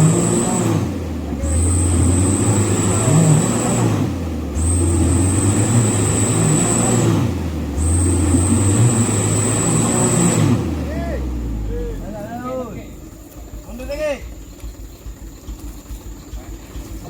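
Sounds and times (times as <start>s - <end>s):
truck diesel engine revving hard: 0.0s - 13.0s.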